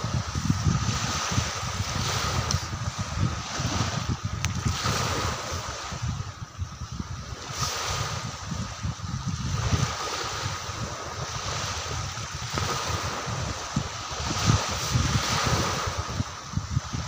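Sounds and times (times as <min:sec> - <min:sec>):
steady outdoor hiss: 0:00.0 - 0:03.4
wind buffeting the microphone: 0:00.0 - 0:17.0.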